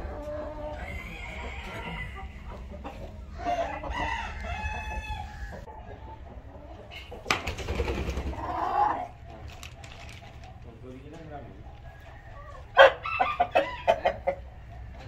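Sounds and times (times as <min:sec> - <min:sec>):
hens clucking: 0:00.0 - 0:15.0
rooster crowing: 0:00.7 - 0:02.5, 0:03.4 - 0:05.7.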